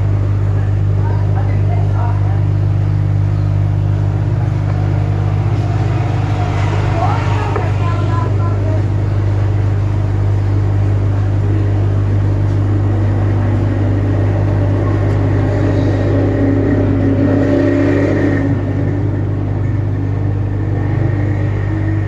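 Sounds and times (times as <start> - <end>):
hot air station blowing: 3.0 - 18.9.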